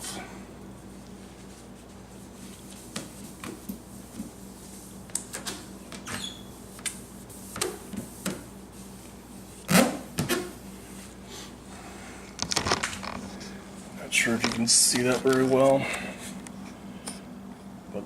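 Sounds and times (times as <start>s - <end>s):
brief squeak: 6.0s - 6.5s.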